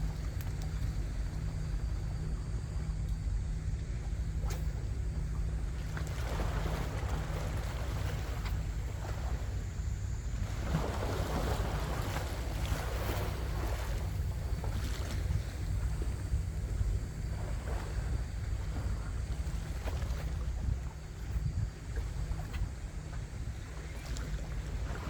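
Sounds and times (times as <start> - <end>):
wind buffeting microphone: 0.0 - 2.8, 4.8 - 25.0
waves washing in: 6.0 - 16.2.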